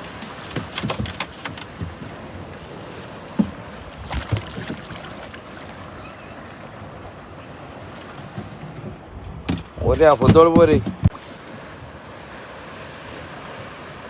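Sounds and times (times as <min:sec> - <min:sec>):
knocks and clicks on boat: 0:00.0 - 0:07.2, 0:07.8 - 0:11.2
sea and wind: 0:00.0 - 0:14.0.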